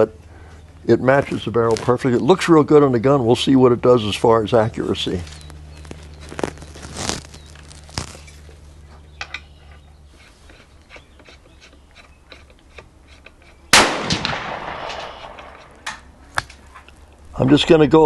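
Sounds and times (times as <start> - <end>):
rifle shot: 13.7 - 16.0.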